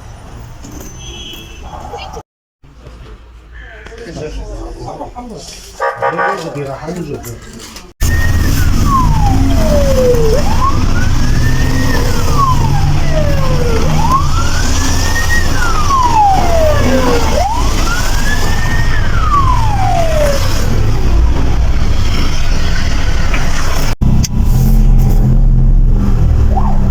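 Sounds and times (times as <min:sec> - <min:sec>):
ambulance siren wailing: 0:08.0 - 0:22.3, 0:26.2 - 0:26.9.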